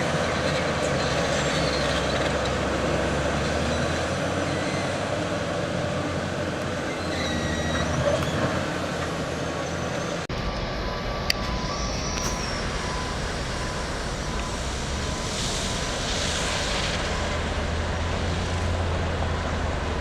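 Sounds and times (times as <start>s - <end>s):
heavy construction machinery running: 0.0s - 20.0s
faint high metallic squeals: 3.6s - 5.1s, 6.8s - 17.4s.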